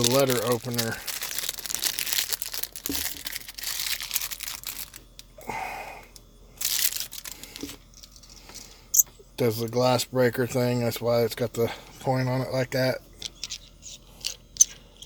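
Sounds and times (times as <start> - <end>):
plastic packaging crinkling: 0.0 - 5.3, 6.6 - 8.4.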